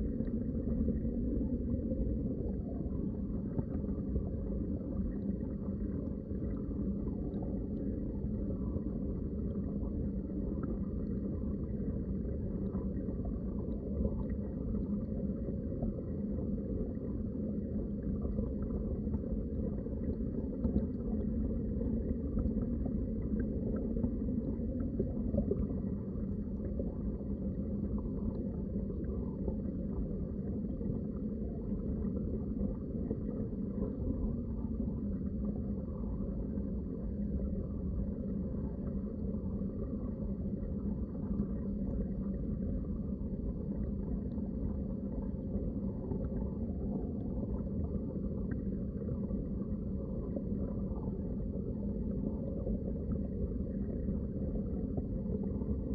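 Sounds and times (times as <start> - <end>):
muffled underwater water rumble: 0.0 - 55.9.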